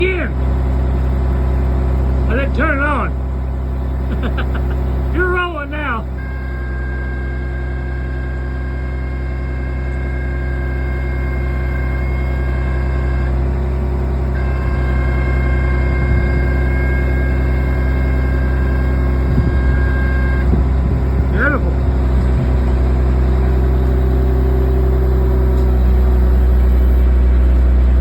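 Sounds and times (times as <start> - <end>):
diesel engine humming: 0.0 - 28.0
faint high whine: 23.4 - 27.1.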